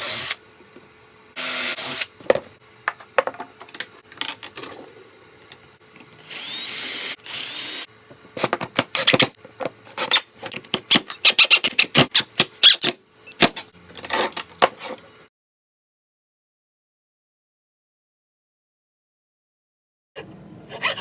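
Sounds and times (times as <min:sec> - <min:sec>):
power drill whining: 0:01.4 - 0:02.1, 0:06.2 - 0:07.9.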